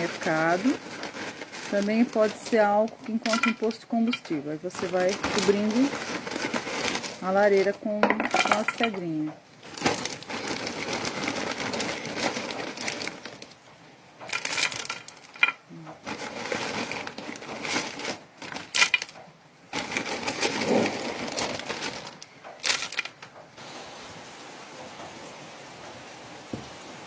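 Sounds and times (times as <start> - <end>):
pebbles clattering: 0.0 - 23.4.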